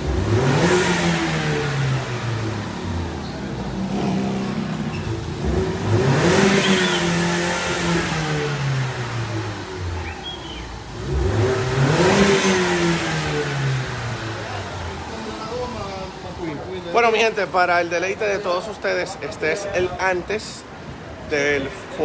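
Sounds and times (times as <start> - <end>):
car engine revving: 0.0 - 16.3.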